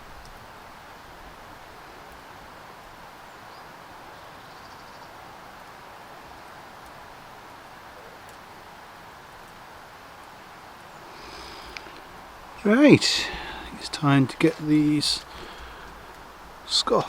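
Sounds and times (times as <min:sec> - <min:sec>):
steady rushing hiss: 0:00.0 - 0:17.0
faint bird chirps: 0:03.2 - 0:05.3.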